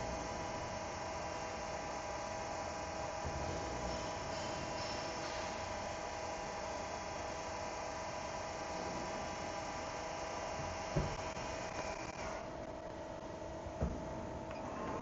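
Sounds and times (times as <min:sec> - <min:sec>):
short knock: 0:10.9 - 0:11.3.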